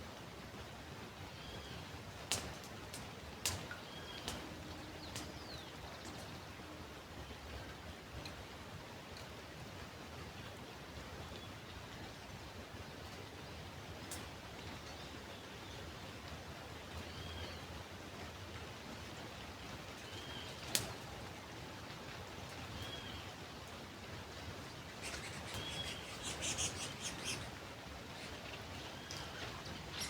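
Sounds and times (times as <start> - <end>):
outdoor hiss: 0.0 - 30.0
rapid high bird chirps: 24.8 - 30.0
bird whistling: 25.0 - 27.5.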